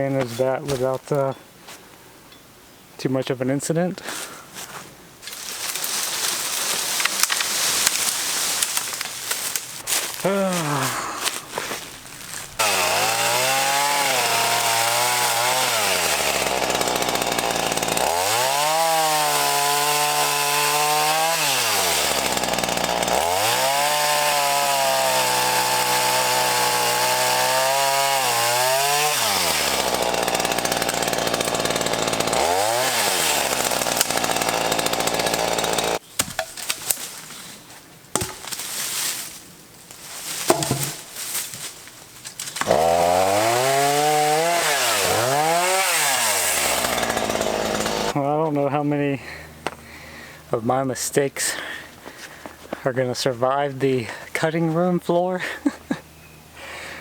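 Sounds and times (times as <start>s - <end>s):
chainsaw revving: 9.9s - 36.0s, 42.6s - 48.2s.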